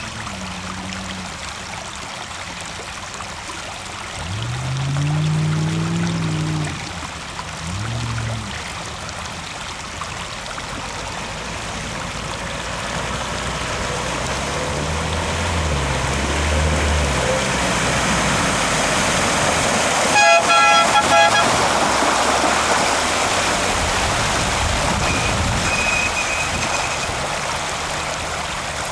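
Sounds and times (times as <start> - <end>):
rush of churned water: 0.0 - 28.9
engine revving: 13.2 - 20.0
vehicle horn toots: 20.0 - 21.8, 25.0 - 27.2.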